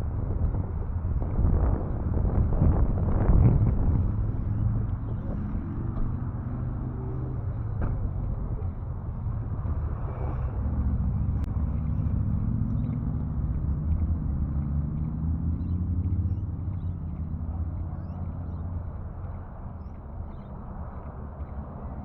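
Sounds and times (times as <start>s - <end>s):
vehicle engine humming: 0.0s - 22.0s.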